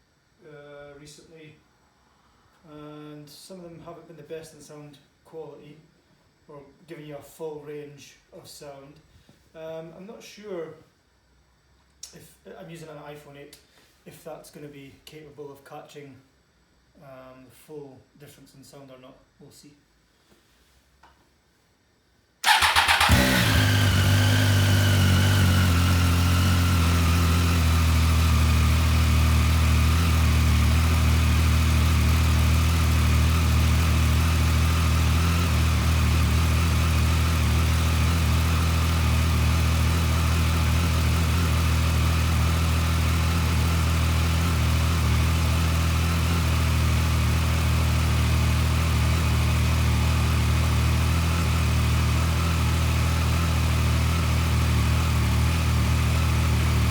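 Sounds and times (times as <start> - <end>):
motorcycle engine idling: 22.4 - 56.9.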